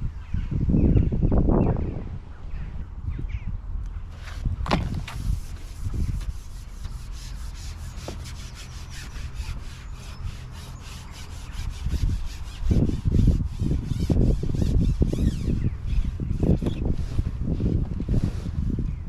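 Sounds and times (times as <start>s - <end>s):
rhythmic rubbing or scraping: 5.0s - 17.2s.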